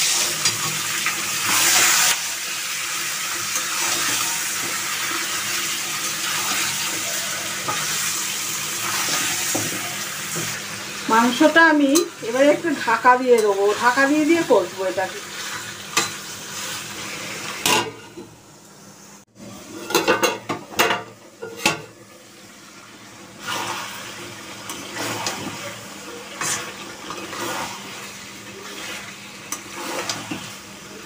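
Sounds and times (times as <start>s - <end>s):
metal clanks and scrapes on pan: 0.0s - 2.2s, 15.9s - 16.2s, 17.6s - 18.3s, 19.7s - 21.9s, 24.7s - 25.6s, 26.4s - 27.8s, 29.5s - 30.5s
chicken sizzling in hot oil: 0.0s - 31.0s.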